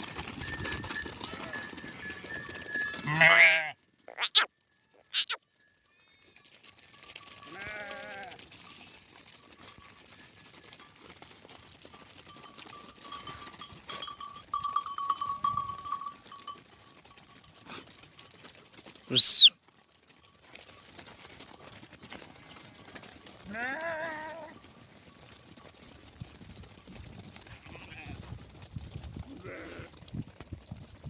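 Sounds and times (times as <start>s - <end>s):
sheep bleating: 3.0s - 4.5s, 5.2s - 5.4s, 7.5s - 8.4s, 22.4s - 24.6s, 27.6s - 28.2s, 29.3s - 29.9s
loud high-pitched animal call: 3.1s - 4.5s, 5.1s - 5.4s, 19.1s - 19.5s.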